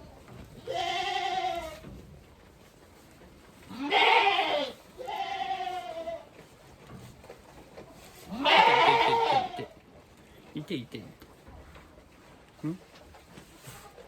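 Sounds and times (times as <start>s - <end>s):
goat bleating: 0.6s - 1.8s, 3.7s - 6.3s, 8.3s - 9.8s.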